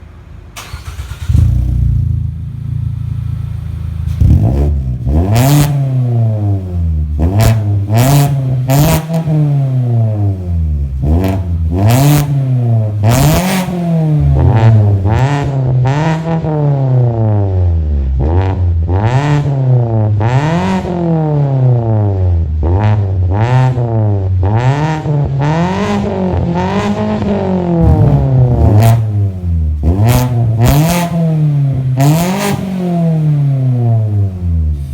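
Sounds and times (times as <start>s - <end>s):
car engine idling and revving: 0.0s - 34.9s.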